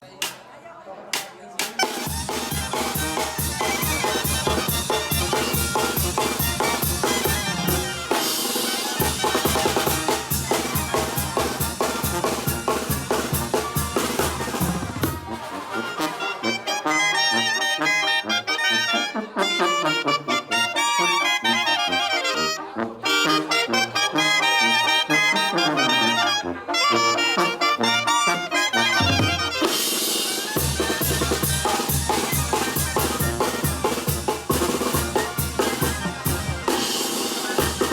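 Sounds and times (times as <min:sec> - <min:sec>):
drums beat: 0:01.2 - 0:15.5, 0:29.0 - 0:37.9
brass band playing: 0:01.6 - 0:37.9.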